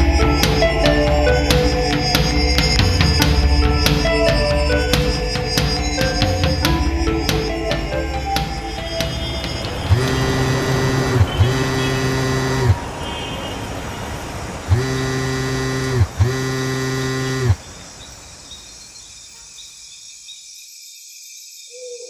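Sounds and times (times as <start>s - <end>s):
deep horn blasts: 0.0s - 17.6s
steady rumble: 0.0s - 18.5s.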